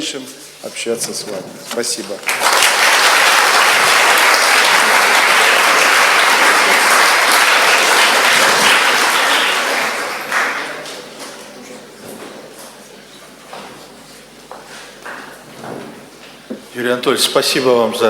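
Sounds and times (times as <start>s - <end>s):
audience applauding: 2.0s - 11.4s.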